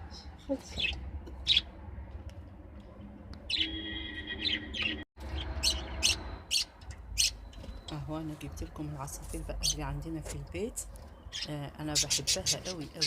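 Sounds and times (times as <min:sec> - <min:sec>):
pet songbirds chirping: 0:00.0 - 0:01.7.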